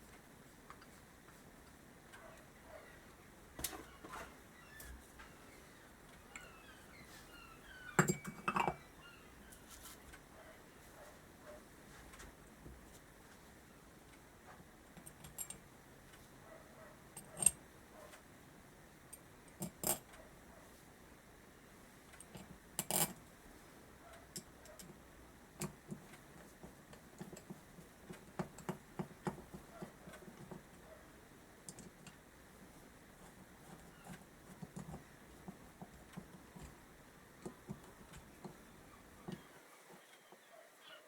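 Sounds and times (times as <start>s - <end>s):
small metal parts clinking: 19.6s - 20.1s, 22.2s - 23.2s.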